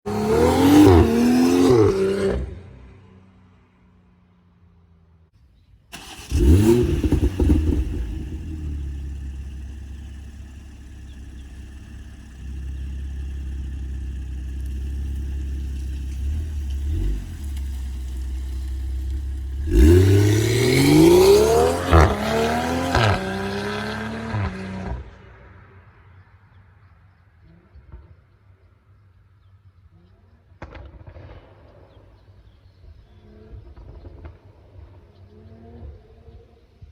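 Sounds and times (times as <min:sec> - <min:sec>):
engine revving: 0:00.0 - 0:02.8, 0:06.0 - 0:25.2
exhaust pops and crackles: 0:05.9 - 0:23.4, 0:30.6 - 0:36.0
car engine starting and idling: 0:05.9 - 0:25.1.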